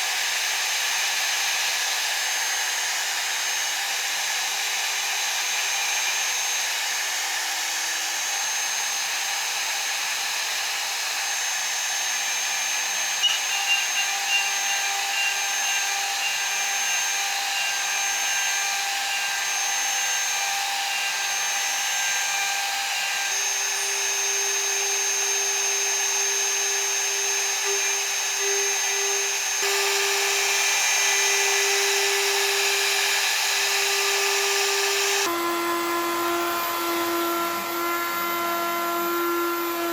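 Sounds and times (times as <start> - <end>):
milling spindle whine: 10.6 - 35.3.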